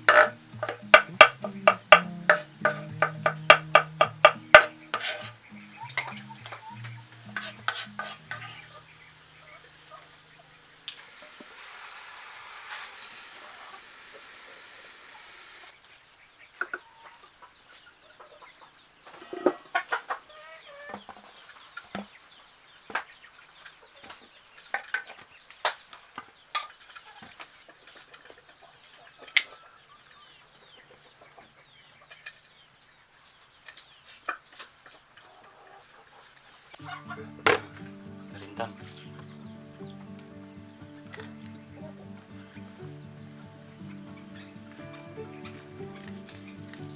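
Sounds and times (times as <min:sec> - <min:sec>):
steady hiss: 0:00.0 - 0:16.4, 0:36.4 - 0:46.9
chickens clucking: 0:00.0 - 0:46.9.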